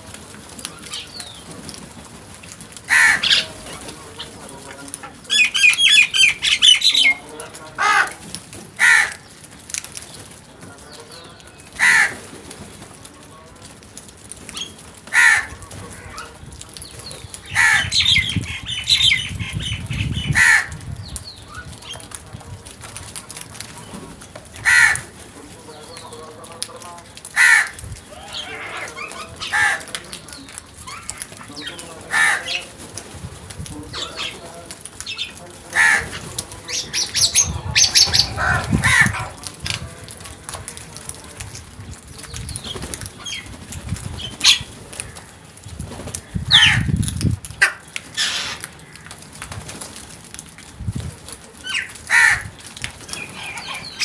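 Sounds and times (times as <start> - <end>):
wings flapping: 0.0 - 54.0
crows cawing: 2.8 - 9.4, 11.6 - 12.4, 15.0 - 16.3, 17.4 - 20.8, 24.5 - 25.3, 27.1 - 30.0, 30.8 - 32.7, 35.0 - 39.4, 44.4 - 46.9, 47.6 - 49.4, 51.6 - 52.6, 53.2 - 54.0
high chirping calls: 5.2 - 7.2, 16.8 - 22.0, 36.0 - 39.5.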